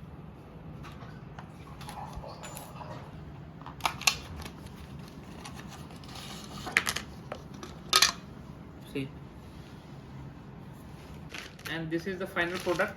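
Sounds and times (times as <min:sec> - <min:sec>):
packaging rustling: 0:11.3 - 0:11.8, 0:12.4 - 0:12.9.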